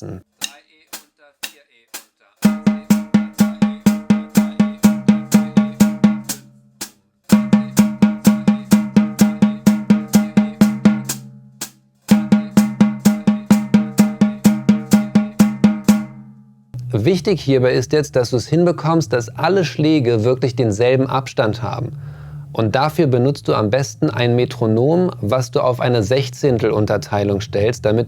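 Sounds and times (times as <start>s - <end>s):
snare drum roll: 2.4s - 16.2s.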